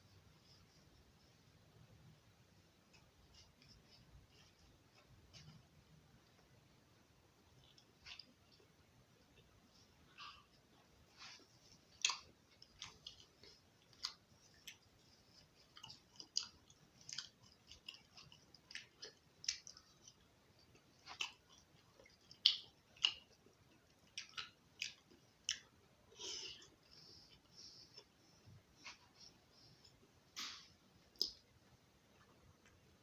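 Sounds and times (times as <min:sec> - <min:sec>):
person chewing food: 0:07.4 - 0:31.5.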